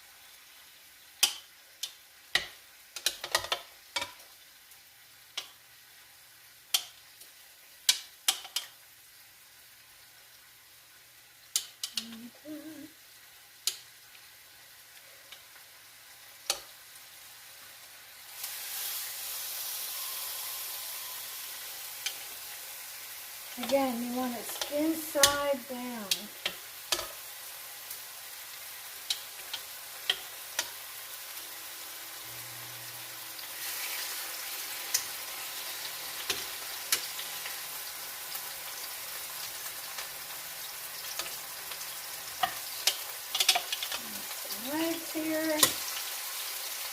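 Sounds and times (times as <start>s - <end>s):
chicken sizzling in hot oil: 0.0s - 46.9s
kitchen utensils clacking on pan: 2.4s - 4.2s, 42.4s - 44.0s.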